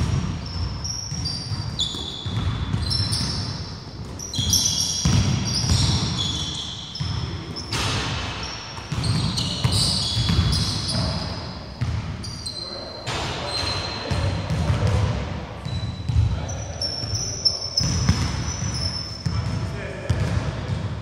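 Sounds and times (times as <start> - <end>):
sneaker squeaks: 0.0 - 20.8
basketball bouncing on wooden floor: 4.0 - 6.2, 8.8 - 11.2, 11.8 - 12.1, 17.8 - 20.9.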